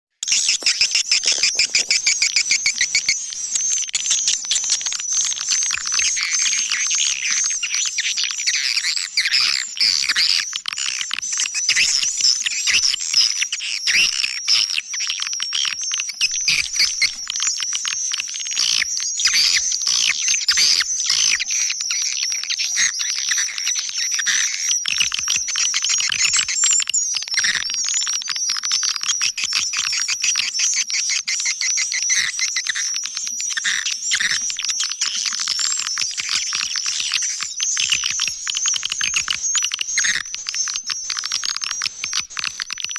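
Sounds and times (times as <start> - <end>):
swiftlets chirping and twittering: 0.2 - 42.9
sharp clicks: 35.0 - 42.9.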